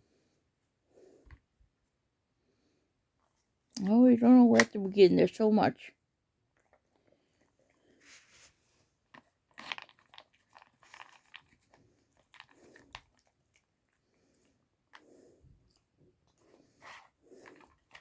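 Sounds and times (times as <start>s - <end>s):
dog crunching treats: 9.1s - 13.7s.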